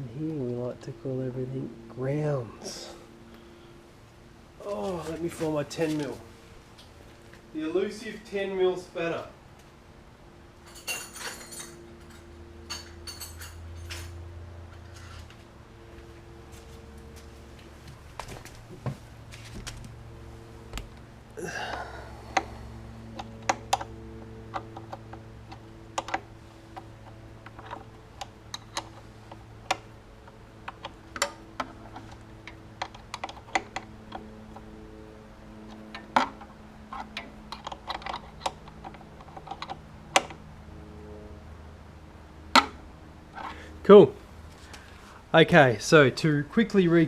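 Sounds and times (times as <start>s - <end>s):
faint steady hum: 0.0s - 47.0s
spanner and nut clinking: 10.6s - 14.2s.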